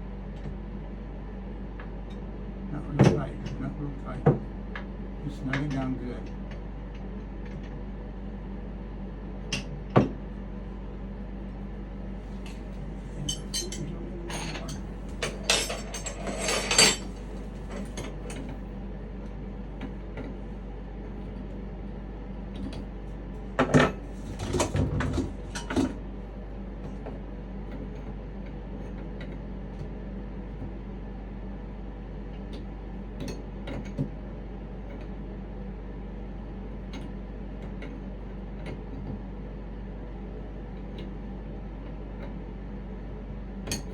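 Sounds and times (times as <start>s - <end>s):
low steady hum: 0.0s - 43.9s
tools and fittings clinking: 13.3s - 17.9s.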